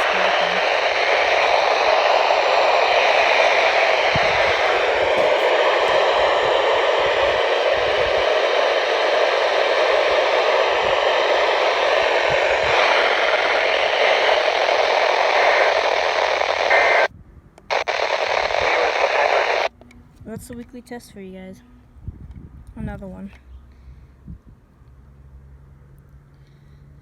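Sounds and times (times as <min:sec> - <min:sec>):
radio static hiss: 0:00.0 - 0:17.1, 0:17.7 - 0:19.7.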